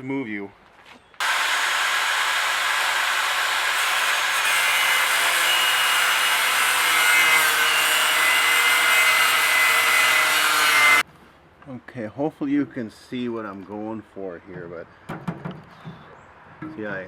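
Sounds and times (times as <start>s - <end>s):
grinder cutting sheet metal: 1.2s - 11.0s.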